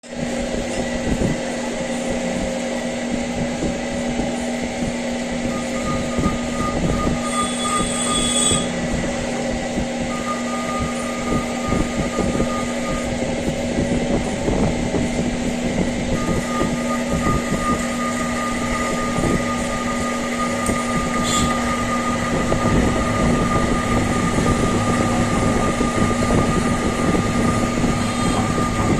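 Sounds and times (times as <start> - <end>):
lathe motor hum: 0.1 - 28.9
high tool whine: 0.4 - 28.9
crackle of lathe cut: 5.4 - 13.5, 16.2 - 28.9.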